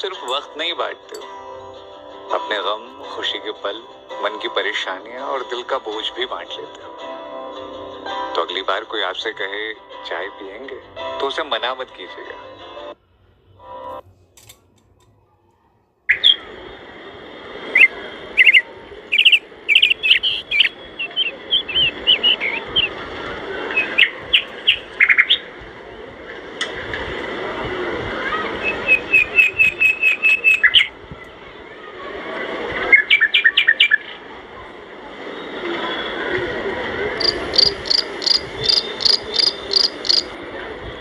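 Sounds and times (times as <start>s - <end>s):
small birds chirping: 17.8s - 22.9s, 37.2s - 40.4s.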